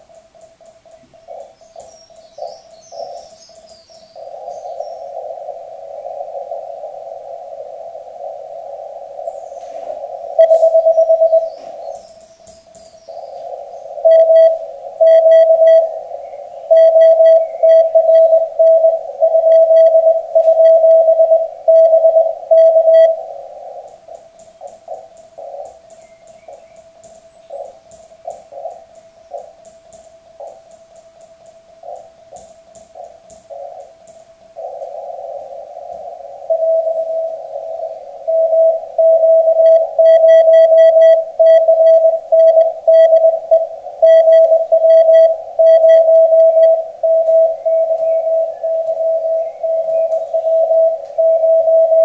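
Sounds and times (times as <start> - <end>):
radio band hiss: 0.8 - 30.7, 31.6 - 52.0
morse code tone: 10.4 - 11.6, 14.0 - 16.0, 16.7 - 23.3, 36.4 - 52.0.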